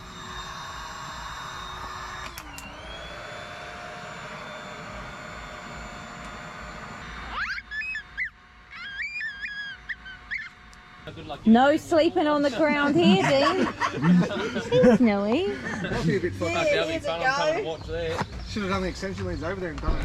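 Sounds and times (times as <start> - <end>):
electric air pump running: 0.0 - 20.0
high wavering chirps: 7.0 - 14.1.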